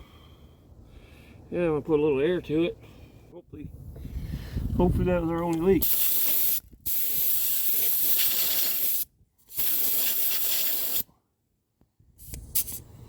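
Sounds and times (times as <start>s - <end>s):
compressed air hissing from air chuck: 5.8s - 11.1s.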